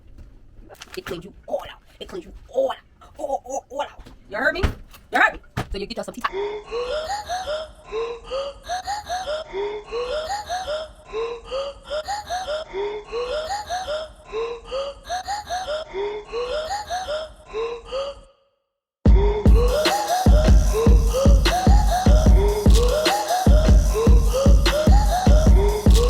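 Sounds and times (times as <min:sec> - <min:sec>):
steady low bass: 0:19.1 - 0:26.0.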